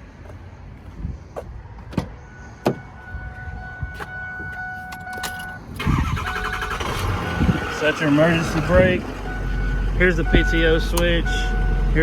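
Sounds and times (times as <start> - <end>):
clicks and knocks in truck cab: 1.8 - 2.8.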